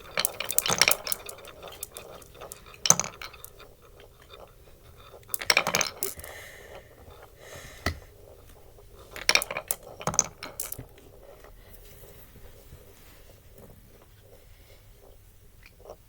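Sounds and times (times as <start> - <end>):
marbles clattering in wooden run: 0.0 - 7.3, 9.0 - 11.1.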